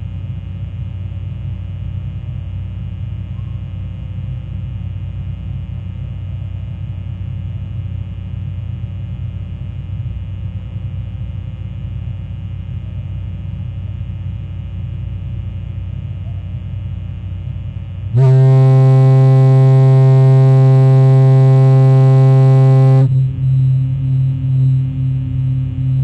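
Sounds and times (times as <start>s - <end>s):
low background rumble: 0.0s - 26.0s
fog horn blast: 18.1s - 23.4s.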